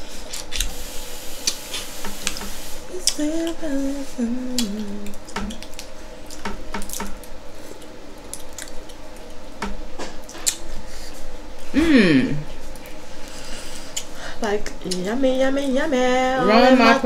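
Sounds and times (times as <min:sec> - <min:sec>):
person humming mmm: 0:02.9 - 0:05.6, 0:11.6 - 0:12.5
wet sticky eating: 0:04.5 - 0:09.3.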